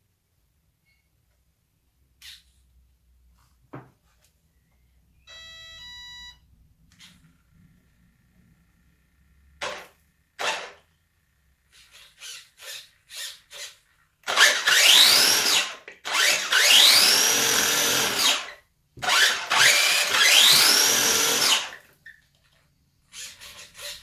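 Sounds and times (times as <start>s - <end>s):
electric toy truck motor whine: 11.7s - 18.5s, 19.1s - 21.8s.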